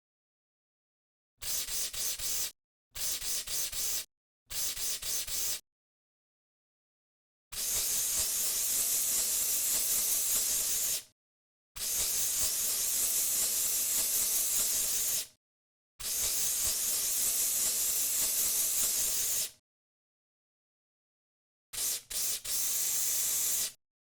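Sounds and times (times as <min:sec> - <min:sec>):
aerosol can spraying hiss: 0:01.4 - 0:05.6, 0:07.6 - 0:11.1, 0:11.8 - 0:15.3, 0:16.0 - 0:19.6, 0:21.8 - 0:23.8.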